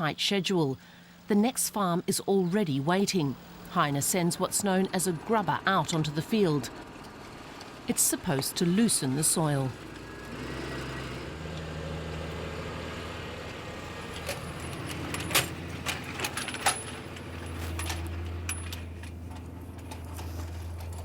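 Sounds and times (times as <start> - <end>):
tractor engine running: 3.4 - 21.0
sharp metallic clinks: 14.2 - 19.2.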